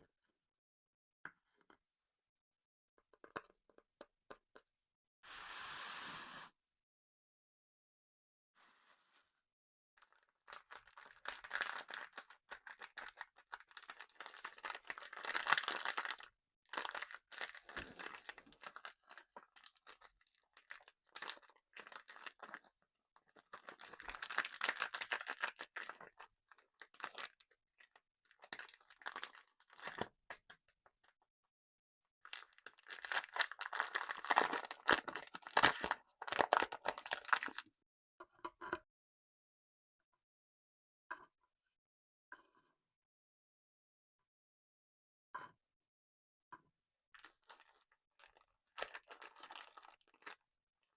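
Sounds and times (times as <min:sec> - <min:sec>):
candy crunching and crinkling: 0:10.0 - 0:30.5, 0:32.3 - 0:37.7, 0:47.2 - 0:50.4.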